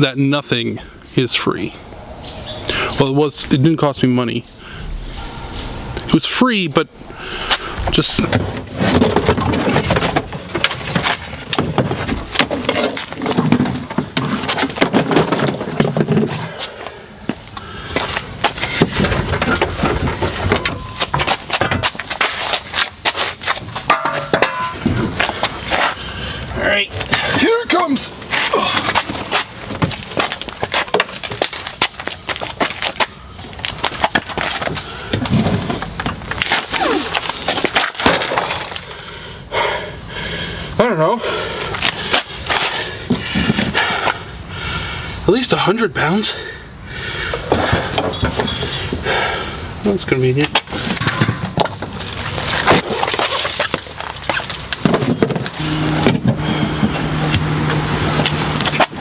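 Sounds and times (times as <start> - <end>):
steady low hum: 55.0 - 59.0.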